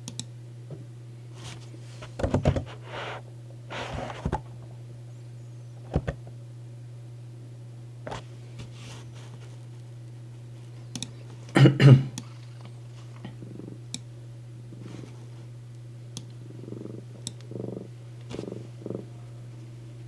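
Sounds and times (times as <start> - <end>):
cat purring: 12.3 - 13.9, 14.7 - 15.4, 16.3 - 19.5.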